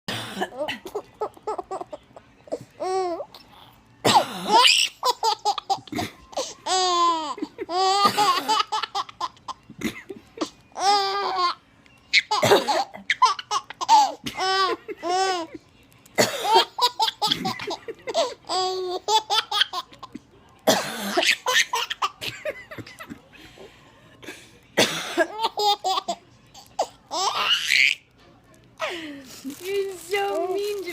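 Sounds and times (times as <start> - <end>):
woman coughing: 4.0 - 4.6, 12.4 - 13.0, 16.2 - 16.7, 20.7 - 21.3, 24.8 - 25.4
baby laughing: 4.4 - 15.6, 16.4 - 20.1, 25.3 - 28.0.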